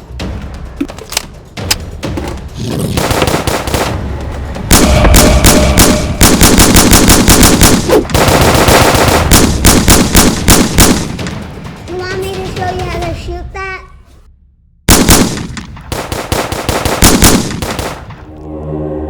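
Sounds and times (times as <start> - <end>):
automatic gunfire: 3.0 - 4.0, 4.7 - 11.3, 14.9 - 18.1.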